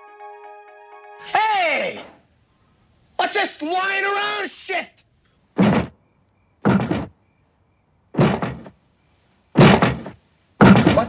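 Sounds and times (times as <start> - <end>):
loud thuds: 5.5 - 6.0, 6.6 - 7.2, 8.2 - 8.8, 9.6 - 11.0.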